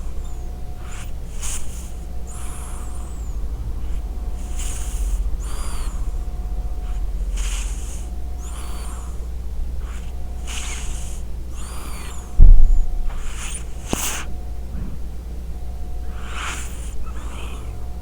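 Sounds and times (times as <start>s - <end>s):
cat snoring: 0.0s - 18.0s
loud low thump: 14.7s - 15.2s.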